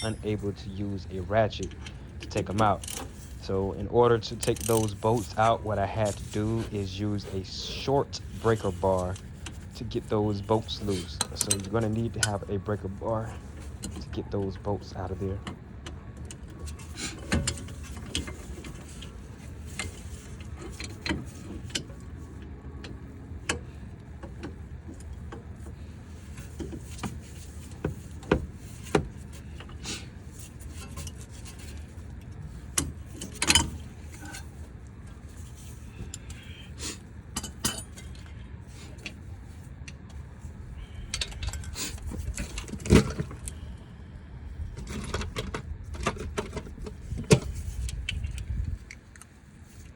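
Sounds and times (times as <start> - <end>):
hand tools clinking on metal: 0.0 - 15.5, 37.4 - 38.3.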